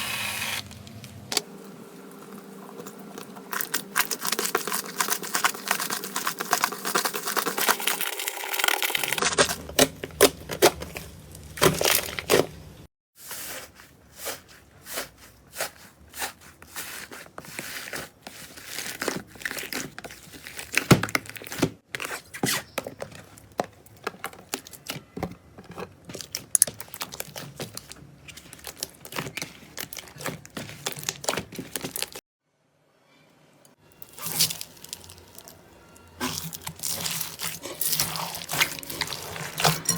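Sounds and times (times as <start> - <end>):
slime crackling and popping: 3.5 - 12.5, 16.8 - 21.6, 26.1 - 32.2, 34.0 - 35.6, 36.2 - 39.9.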